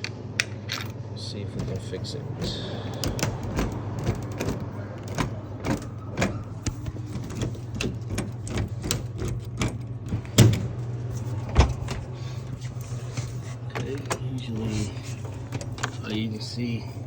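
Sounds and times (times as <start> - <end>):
vending machine humming: 0.0 - 17.0
hands clicking and rattling machine: 1.6 - 10.6.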